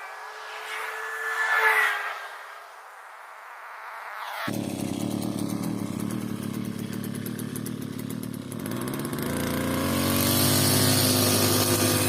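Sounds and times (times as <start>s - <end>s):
brush cutter engine running: 4.5s - 12.0s.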